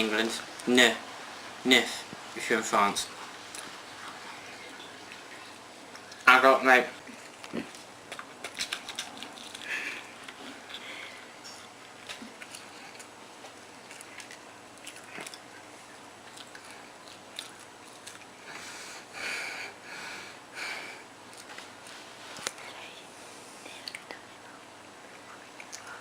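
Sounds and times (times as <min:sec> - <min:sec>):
person chewing food: 0:03.3 - 0:06.3, 0:07.0 - 0:19.1, 0:21.3 - 0:22.6
hissy breaths or sniffs: 0:18.4 - 0:21.1
wet mouth clicks: 0:23.8 - 0:24.2.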